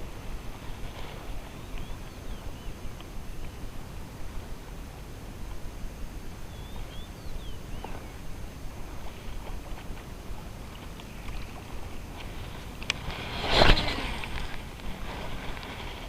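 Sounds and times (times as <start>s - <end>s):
low outdoor rumble: 0.0s - 16.0s
faint ticks: 0.8s - 3.6s, 9.0s - 16.0s
bird calls chirping: 1.4s - 3.7s, 6.5s - 8.3s.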